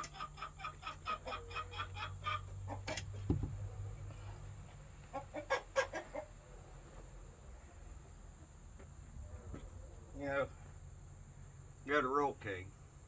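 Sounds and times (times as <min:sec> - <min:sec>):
chickens clucking: 0:00.0 - 0:08.2
dull thump: 0:03.2 - 0:03.7.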